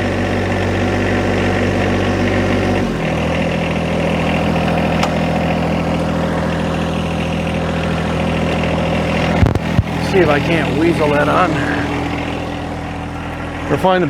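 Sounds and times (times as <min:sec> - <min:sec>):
tractor diesel engine running: 0:00.0 - 0:14.0.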